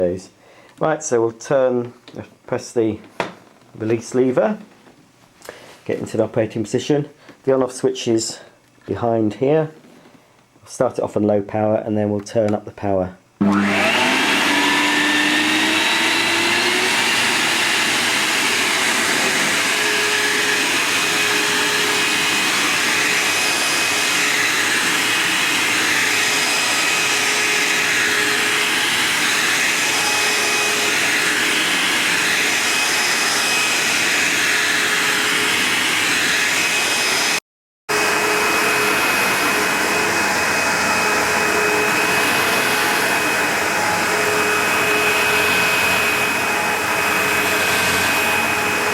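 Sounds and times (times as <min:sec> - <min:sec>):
vacuum cleaner motor whining: 0:13.4 - 0:48.9.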